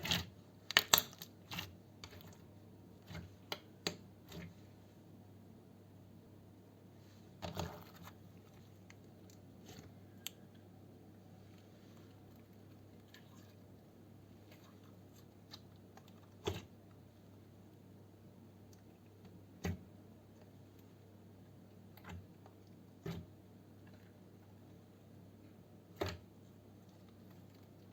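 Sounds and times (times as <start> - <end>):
low steady hum: 0.0 - 27.9.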